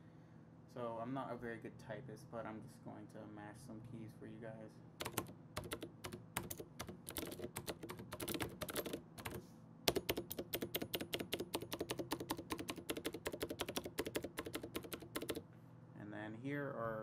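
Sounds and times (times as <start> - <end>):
mechanical keyboard clicking: 5.0 - 15.4.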